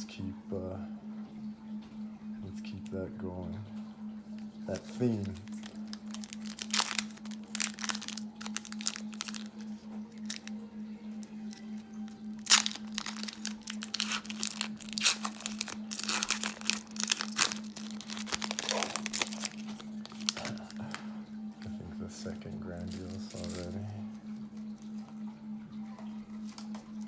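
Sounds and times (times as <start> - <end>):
low steady hum: 0.0 - 27.0
card wrappers tearing and crinkling: 4.7 - 10.5, 11.2 - 21.0, 22.8 - 23.8.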